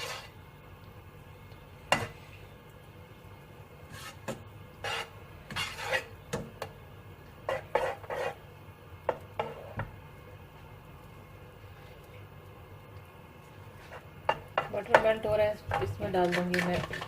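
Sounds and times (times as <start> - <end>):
utensil scraping in a pan: 0.0 - 0.4, 1.9 - 2.5, 3.8 - 6.4, 7.4 - 8.5, 9.1 - 9.9, 13.4 - 17.0.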